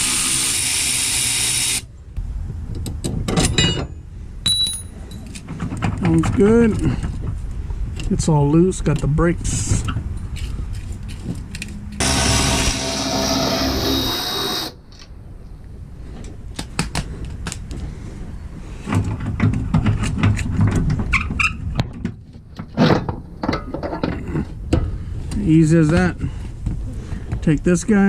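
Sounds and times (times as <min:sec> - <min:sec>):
metal clanks: 0:02.8 - 0:07.2.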